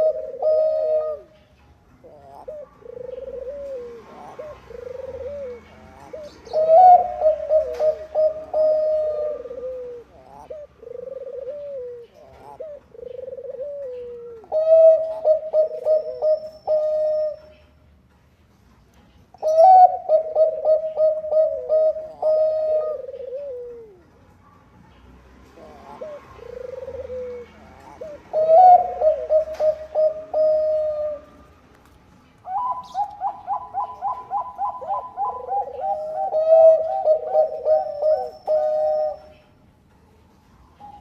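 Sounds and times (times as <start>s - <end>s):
dove cooing: 0.0s - 1.4s, 2.0s - 17.7s, 19.4s - 24.6s, 25.5s - 31.5s, 32.4s - 39.6s, 40.7s - 41.0s.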